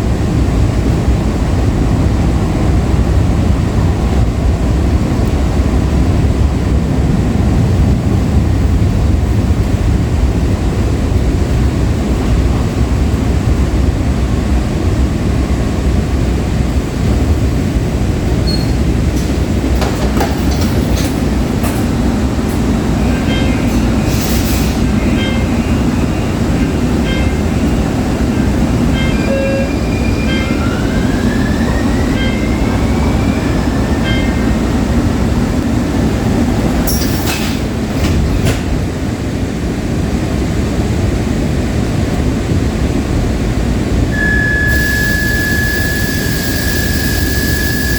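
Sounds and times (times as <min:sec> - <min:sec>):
wheels rumbling on rail: 0:00.0 - 0:47.9
faint rising whine: 0:44.2 - 0:47.9.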